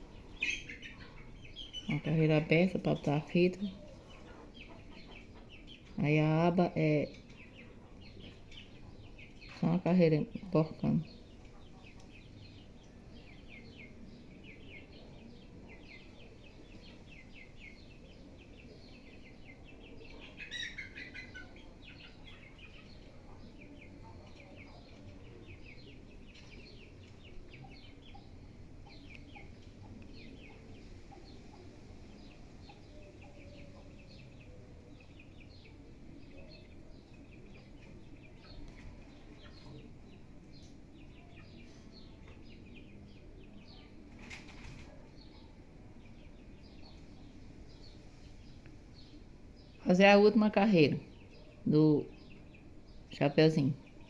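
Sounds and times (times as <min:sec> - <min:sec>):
birds chirping: 0:00.0 - 0:54.0.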